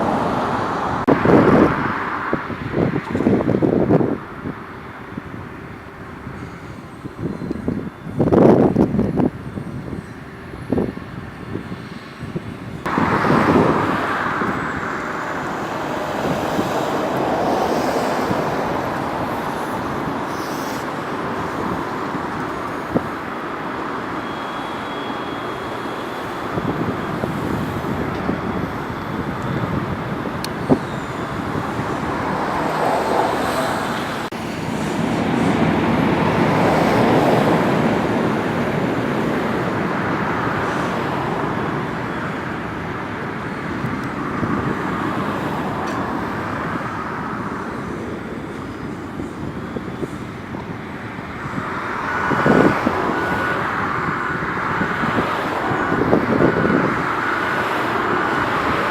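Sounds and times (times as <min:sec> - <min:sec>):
road traffic passing: 0:00.0 - 0:58.9
faint high whine: 0:05.1 - 0:35.6.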